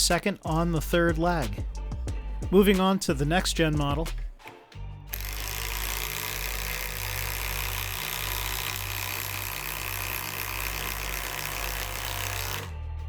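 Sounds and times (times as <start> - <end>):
impact driver hammering: 5.1 - 12.7.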